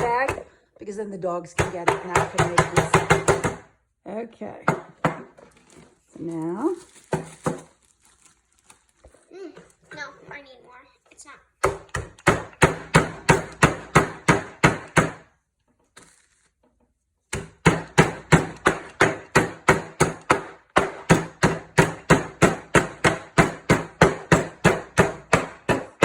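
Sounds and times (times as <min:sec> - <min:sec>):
pounding on a bag: 0:06.8 - 0:07.8.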